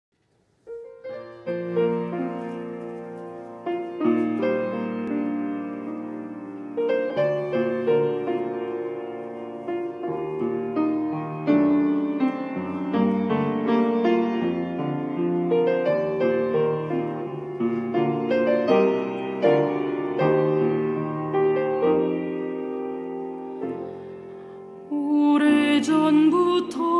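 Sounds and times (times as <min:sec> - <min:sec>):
solo piano playing: 0:00.6 - 0:26.9.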